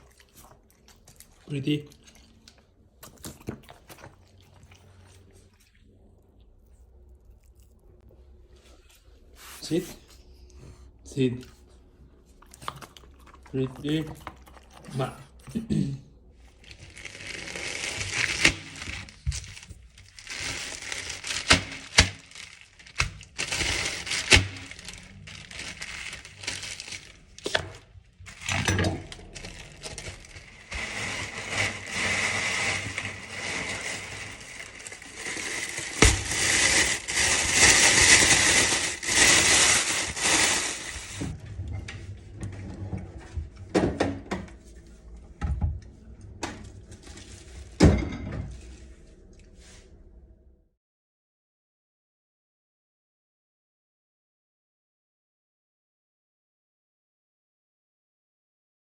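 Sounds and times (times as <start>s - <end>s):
food packaging rustling: 16.4s - 41.4s, 46.6s - 47.8s.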